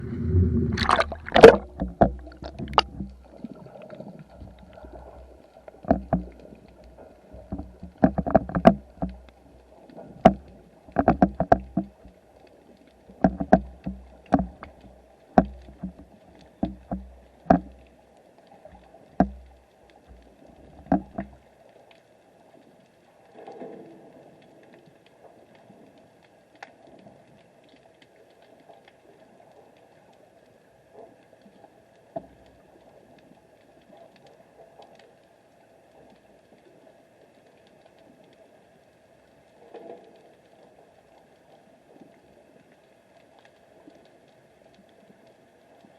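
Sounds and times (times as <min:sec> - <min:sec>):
sharp knocks and clunks underwater: 0:00.0 - 0:12.2, 0:13.1 - 0:17.9, 0:18.7 - 0:21.4
faint steady hum: 0:00.0 - 0:23.2
low water rumble: 0:00.0 - 0:45.9.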